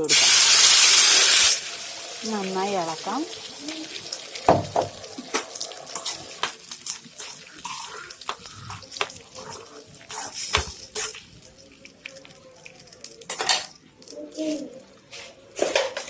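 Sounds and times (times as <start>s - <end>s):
wet sloshing of chutney stirred: 3.0s - 12.9s.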